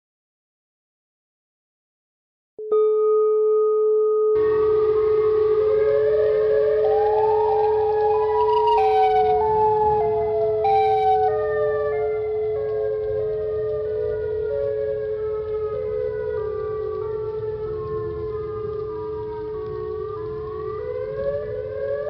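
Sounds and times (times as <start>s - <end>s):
steady electronic tone: 4.3s - 22.0s
siren-like stepped tone: 4.4s - 22.0s.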